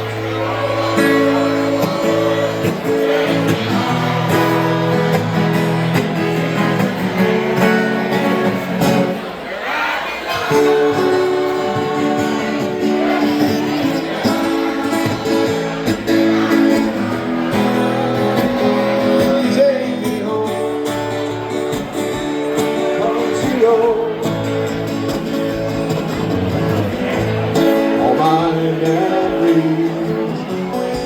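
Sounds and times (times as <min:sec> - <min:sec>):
acoustic guitar strumming: 0:00.0 - 0:09.5, 0:10.2 - 0:31.0
person singing: 0:10.4 - 0:21.3, 0:27.8 - 0:31.0.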